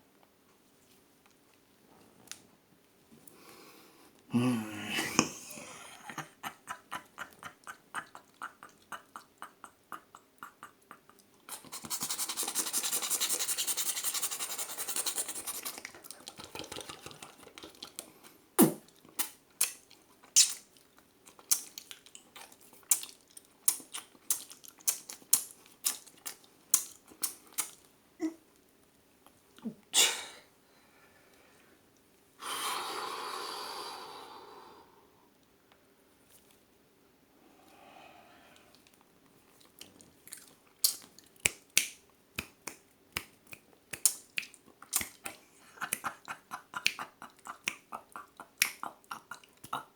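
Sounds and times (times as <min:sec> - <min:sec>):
tongue clicks: 0:07.4 - 0:20.7, 0:21.3 - 0:27.8, 0:40.3 - 0:49.9
mouth pops: 0:40.8 - 0:49.9.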